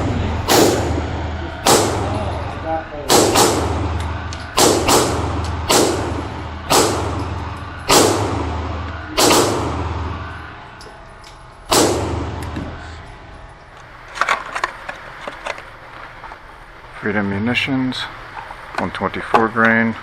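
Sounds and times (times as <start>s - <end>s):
pistol shots: 0.4s - 2.4s, 3.1s - 10.5s, 11.7s - 12.9s.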